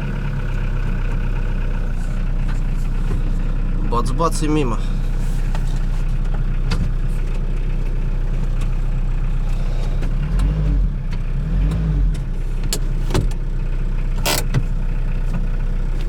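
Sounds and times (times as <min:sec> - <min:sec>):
diesel truck engine idling: 0:00.0 - 0:16.0.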